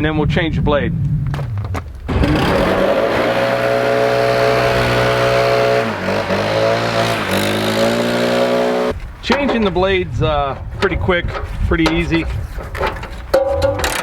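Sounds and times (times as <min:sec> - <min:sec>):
leaf blower running: 0:02.1 - 0:08.9.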